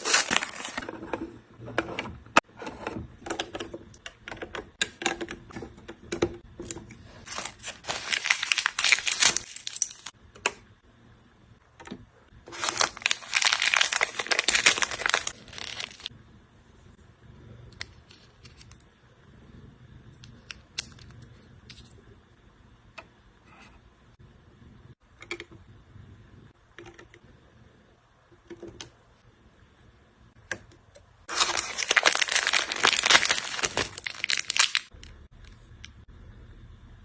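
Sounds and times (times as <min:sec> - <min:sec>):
plastic crinkling and tearing: 0:00.0 - 0:00.9, 0:07.2 - 0:10.1, 0:12.5 - 0:16.1, 0:31.3 - 0:34.9
plastic packaging rustling: 0:00.0 - 0:01.0, 0:07.2 - 0:10.1, 0:12.5 - 0:16.1, 0:31.3 - 0:34.9.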